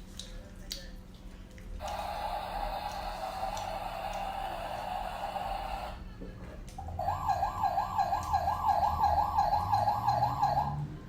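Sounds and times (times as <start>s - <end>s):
steady high whine: 1.8s - 6.0s
emergency siren wailing: 6.9s - 11.0s.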